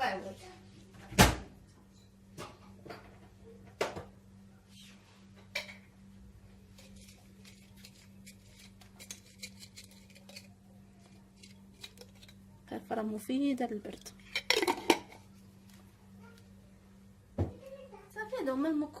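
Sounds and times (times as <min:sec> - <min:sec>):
spoon and dishes clinking: 0:14.0 - 0:15.2.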